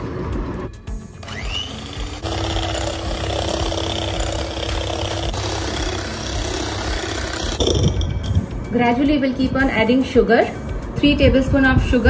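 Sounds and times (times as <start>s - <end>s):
electric mixer motor hum: 1.2s - 8.1s.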